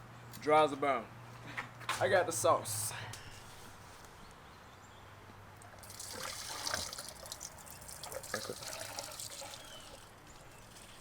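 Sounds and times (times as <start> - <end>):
fuel trickling into tank: 5.6 - 11.0.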